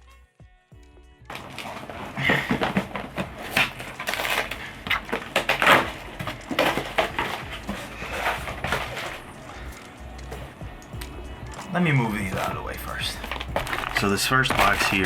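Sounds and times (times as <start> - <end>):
packaging crinkling and tearing: 1.3 - 9.8, 12.2 - 15.0.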